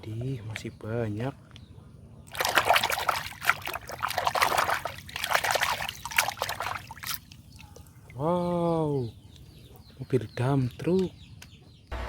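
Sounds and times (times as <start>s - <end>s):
water splashing over toys: 2.3s - 7.9s.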